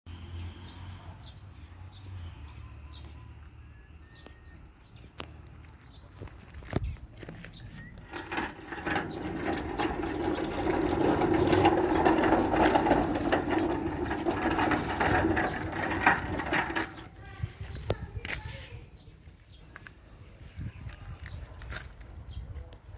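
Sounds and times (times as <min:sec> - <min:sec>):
metal sliding gate rolling: 0:07.7 - 0:17.2.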